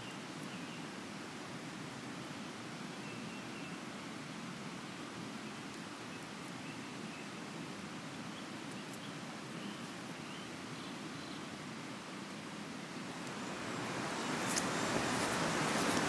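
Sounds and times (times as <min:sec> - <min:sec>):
river rushing: 0:07.3 - 0:16.0
faint bird chirps: 0:08.3 - 0:11.5.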